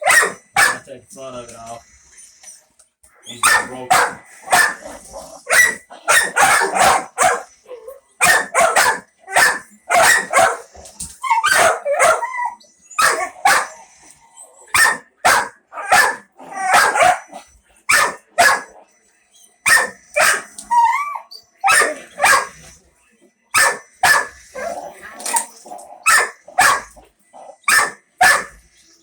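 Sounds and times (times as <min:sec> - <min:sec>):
dog yelping: 0:00.0 - 0:00.8, 0:03.2 - 0:13.8, 0:14.7 - 0:18.8, 0:19.6 - 0:22.5, 0:23.5 - 0:25.4, 0:26.0 - 0:26.9, 0:27.6 - 0:28.6
dog barking: 0:00.0 - 0:00.9, 0:03.4 - 0:07.5, 0:08.2 - 0:10.7, 0:11.3 - 0:13.8, 0:14.7 - 0:18.8, 0:19.6 - 0:21.0, 0:21.6 - 0:22.6, 0:23.5 - 0:24.8, 0:26.0 - 0:27.0, 0:27.7 - 0:28.6.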